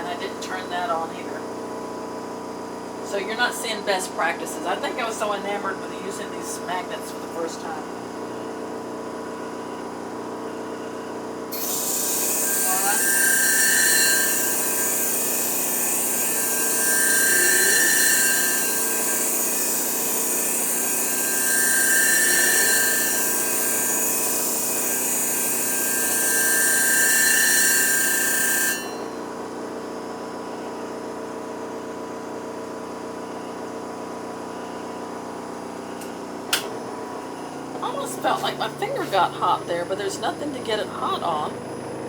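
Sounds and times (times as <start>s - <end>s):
sharpening machine motor hum: 11.5s - 30.8s, 34.4s - 42.0s
blade grinding gritty hiss: 11.6s - 29.1s.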